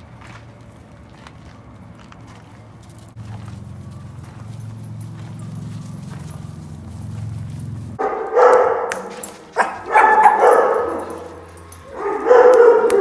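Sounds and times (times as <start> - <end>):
low steady hum: 0.0 - 8.0
dogs barking loudly: 4.2 - 13.0.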